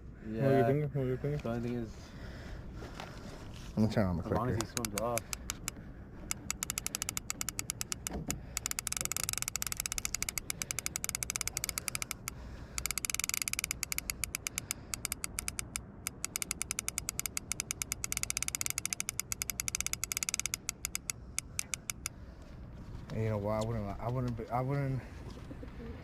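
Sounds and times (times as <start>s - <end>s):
fishing reel clicker ratcheting: 4.5s - 22.2s.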